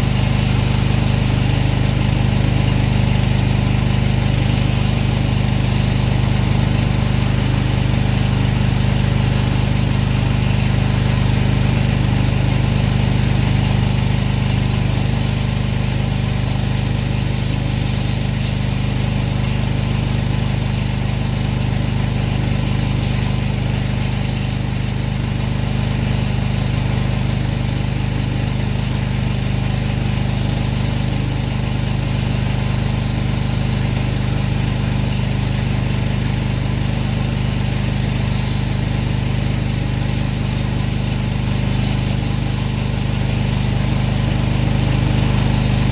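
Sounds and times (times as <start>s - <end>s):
pressure washer engine running: 0.0s - 45.9s
high hiss: 13.8s - 44.6s, 45.5s - 45.9s.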